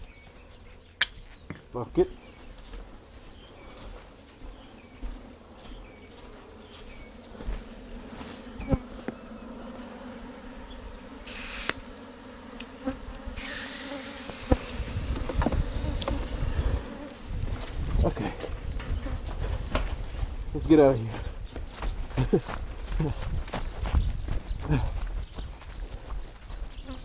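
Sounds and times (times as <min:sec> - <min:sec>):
bees buzzing: 0:02.9 - 0:21.0, 0:26.8 - 0:27.0
fogger hiss: 0:11.2 - 0:11.8, 0:13.3 - 0:17.2.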